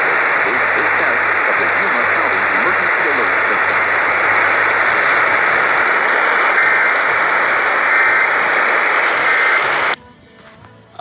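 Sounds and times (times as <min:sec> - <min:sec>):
radio static hiss: 0:00.0 - 0:10.0
short two-tone data bursts: 0:04.4 - 0:05.8.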